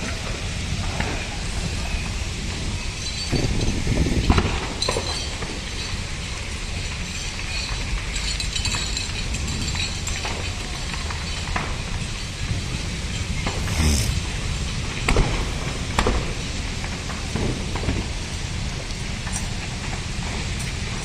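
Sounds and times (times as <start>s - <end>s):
low fire rumble: 9.2s - 21.0s.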